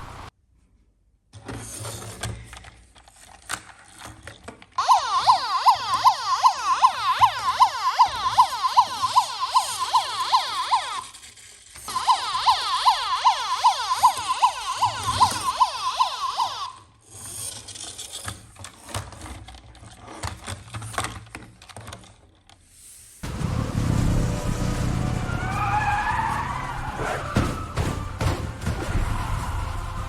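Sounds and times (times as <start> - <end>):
irregular clicks and rattles: 2.1 - 4.8, 17.2 - 22.6
emergency siren warbling fast: 4.8 - 16.9, 24.1 - 30.0.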